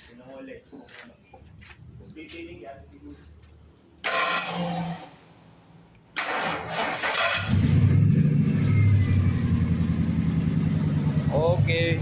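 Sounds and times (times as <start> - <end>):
engine starter cranking: 6.2 - 7.8
engine idling: 7.3 - 12.0.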